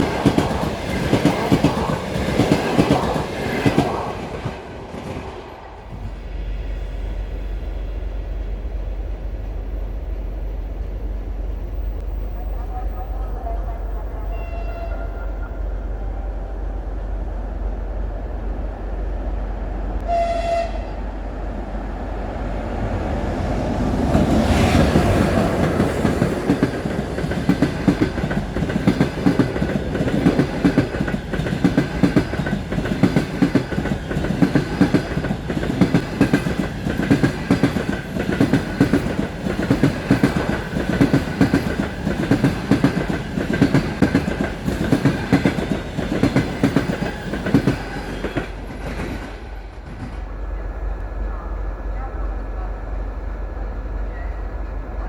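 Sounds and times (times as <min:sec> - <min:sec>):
train passing at speed: 0:00.0 - 0:55.0
train horn blast: 0:12.4 - 0:16.9, 0:20.0 - 0:21.1.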